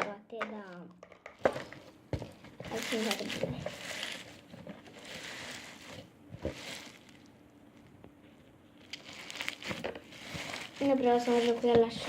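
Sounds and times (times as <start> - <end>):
slime squelching and crackling: 2.2 - 7.9, 8.7 - 12.0.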